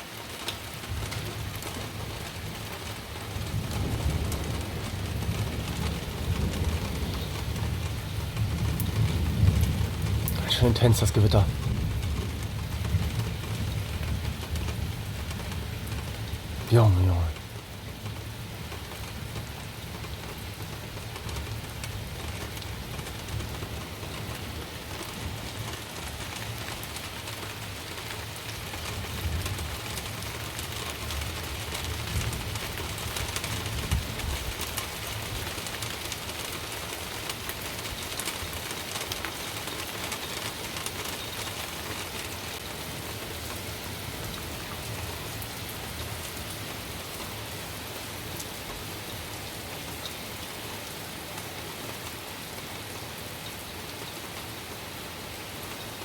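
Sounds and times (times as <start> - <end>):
steady rain: 0.0 - 56.0
thunder rumbling: 3.3 - 17.5.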